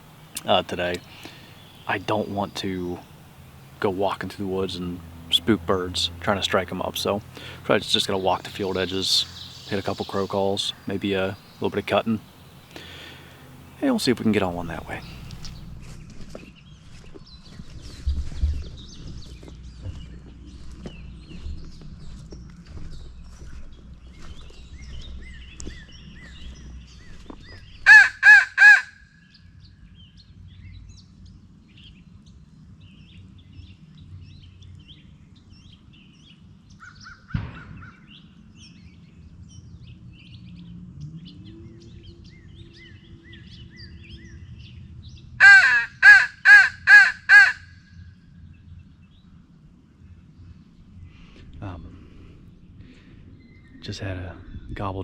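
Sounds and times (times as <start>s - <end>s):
crow call caws: 0.4s - 3.8s, 7.1s - 11.6s, 12.2s - 13.6s, 27.8s - 29.1s, 45.4s - 47.9s
sharp knock: 37.3s - 37.8s.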